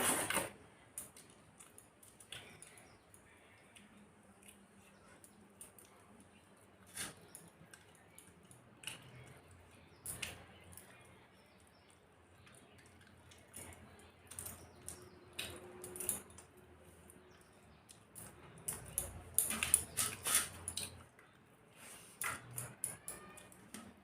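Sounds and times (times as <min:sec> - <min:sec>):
person chewing and lip smacking: 0:03.5 - 0:06.2.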